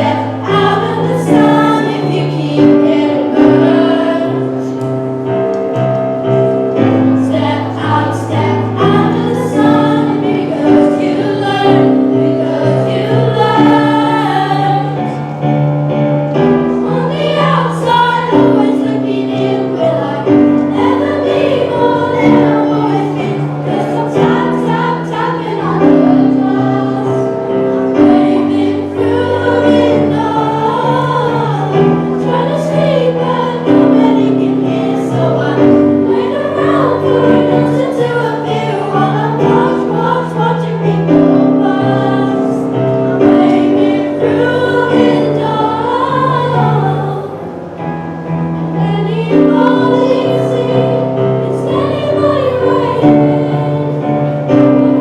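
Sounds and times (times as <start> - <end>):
children's choir singing: 0.0 - 55.0
held accompaniment chords: 0.0 - 55.0.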